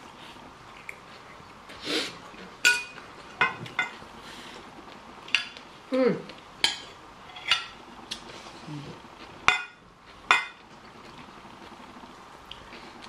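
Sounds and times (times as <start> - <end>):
dishes clinking: 2.6 - 4.0, 6.6 - 7.8, 9.5 - 10.6.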